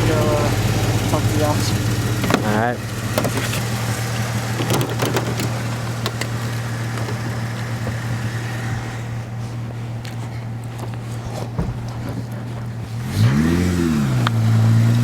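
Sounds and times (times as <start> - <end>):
engine idling: 0.0 - 15.0
sharp crunches and clicks: 1.1 - 13.5.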